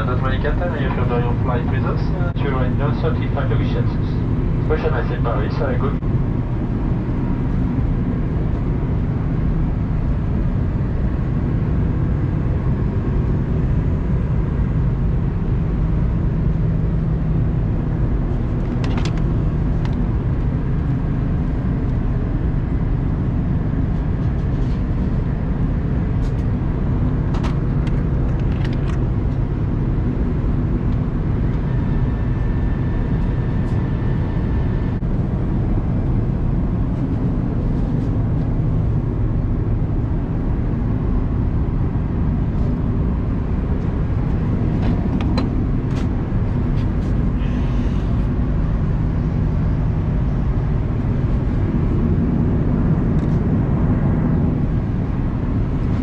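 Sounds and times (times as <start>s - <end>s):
airliner cabin engine rumble: 0.0s - 56.0s.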